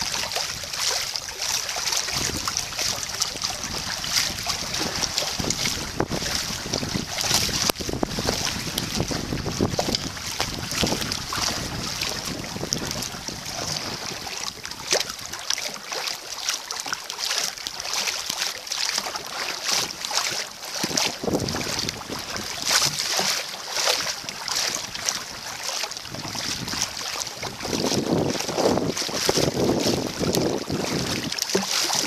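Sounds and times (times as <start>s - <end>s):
short sharp splashes: 0.0s - 32.0s
water lapping around kayak: 0.0s - 32.0s
wind gusting against microphone: 2.0s - 14.7s, 20.9s - 22.6s, 26.1s - 31.3s.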